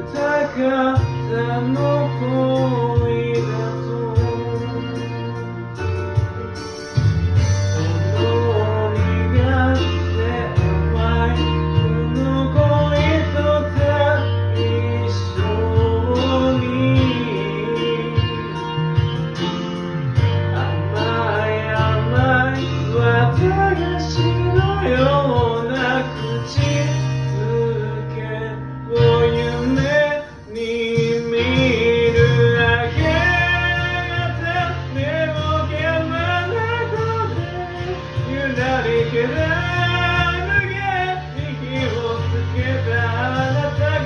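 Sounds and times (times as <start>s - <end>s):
karaoke pop-rock backing track: 0.0s - 44.0s.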